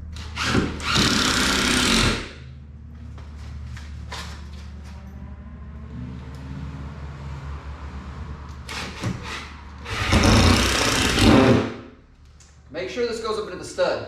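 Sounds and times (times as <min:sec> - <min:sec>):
power drill driving screw into wood: 0:00.2 - 0:02.3, 0:08.7 - 0:11.8.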